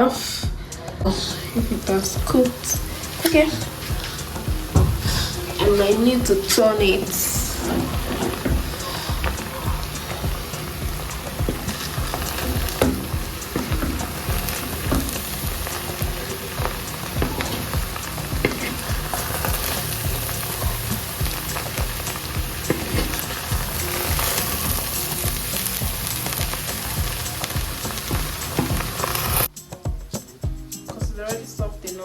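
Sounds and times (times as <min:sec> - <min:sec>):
fried rice sizzling: 0:01.1 - 0:29.6
utensil scraping and knocking pot: 0:01.3 - 0:29.5.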